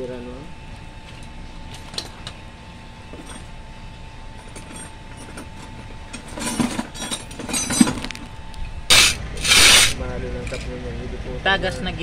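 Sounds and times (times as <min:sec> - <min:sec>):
metal tools clinking and rattling: 0:04.4 - 0:08.3, 0:08.9 - 0:10.8.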